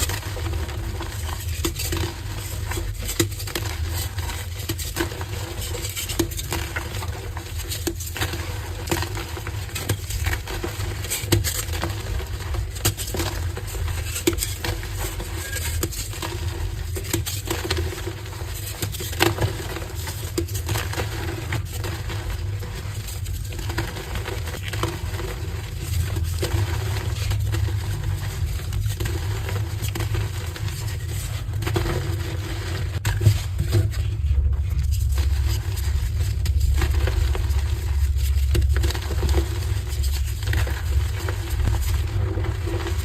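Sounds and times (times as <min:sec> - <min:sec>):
steady low hum: 0:25.0 - 0:43.0.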